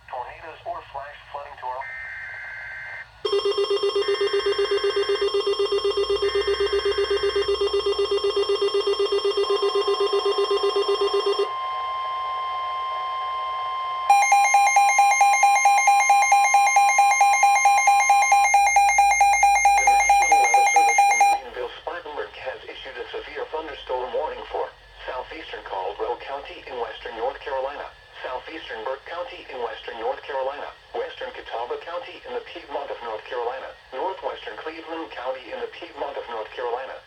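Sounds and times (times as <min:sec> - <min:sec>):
rapid beeping alarm: 0:01.8 - 0:21.4
steady warning alarm tone: 0:01.8 - 0:21.5.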